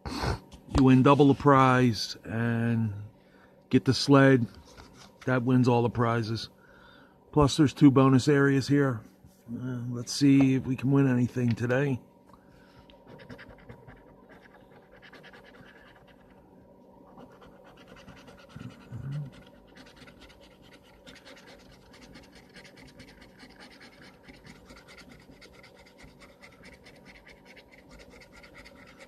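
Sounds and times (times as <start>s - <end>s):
lottery ticket being scratched: 17.1s - 29.0s.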